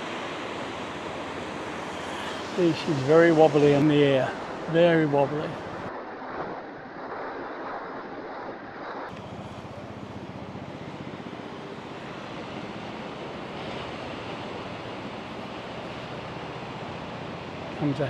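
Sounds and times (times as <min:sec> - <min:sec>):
surf on beach: 0:00.0 - 0:18.0
wind buffeting microphone: 0:00.0 - 0:18.0.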